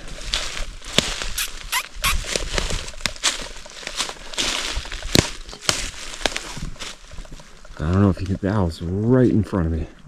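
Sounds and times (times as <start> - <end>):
twigs snapping and leaves rustling: 2.3 - 8.4.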